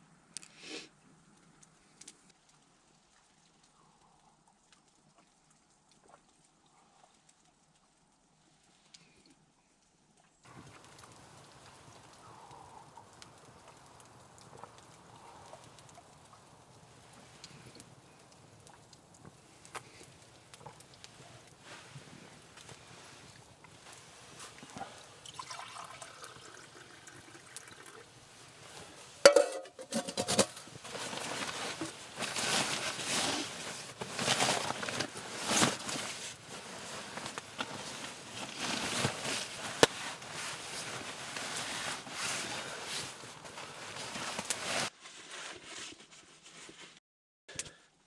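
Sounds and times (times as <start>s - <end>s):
water pouring and splashing: 10.5s - 12.2s, 12.9s - 44.9s.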